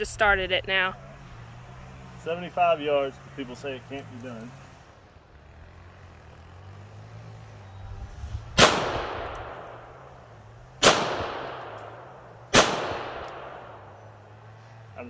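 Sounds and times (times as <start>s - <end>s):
handgun shots with echo: 8.6s - 10.0s, 10.8s - 14.1s.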